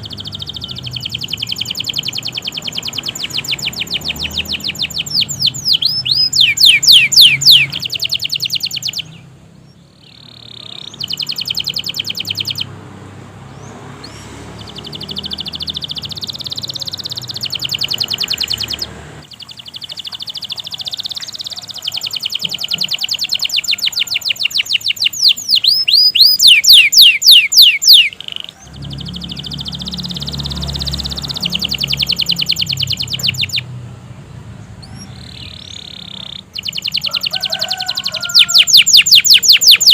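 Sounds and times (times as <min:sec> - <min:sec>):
canary singing: 0:00.0 - 0:39.9.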